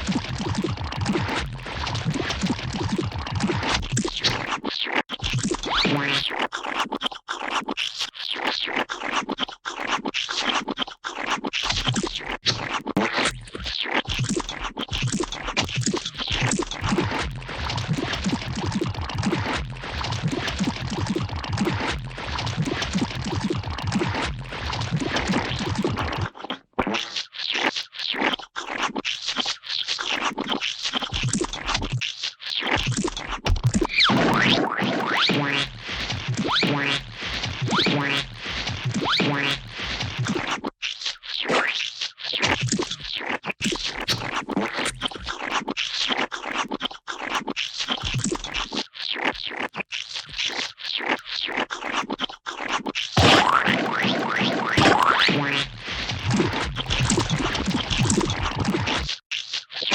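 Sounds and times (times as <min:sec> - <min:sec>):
wet splats and squelches: 0:41.4 - 0:59.9
wet gooey splats: 0:53.2 - 0:59.2.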